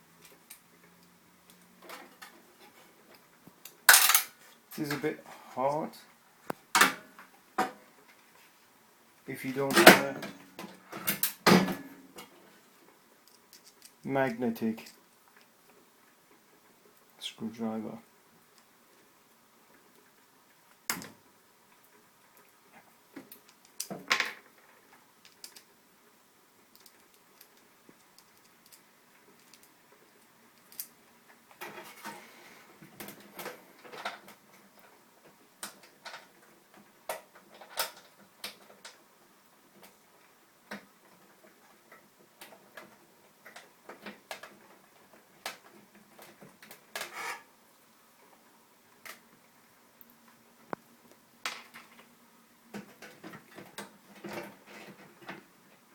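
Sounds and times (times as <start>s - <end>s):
screwdriver clicking and scraping: 47.0s - 47.4s.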